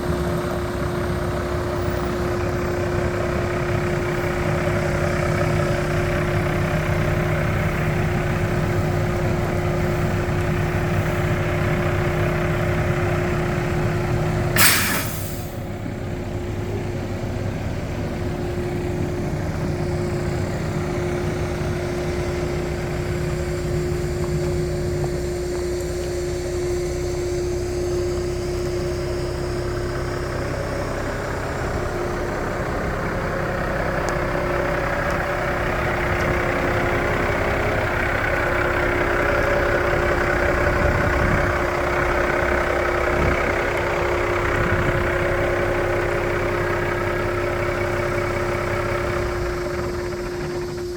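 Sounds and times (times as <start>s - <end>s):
diesel truck engine idling: 0.0s - 50.9s
air brake hiss: 14.6s - 15.7s.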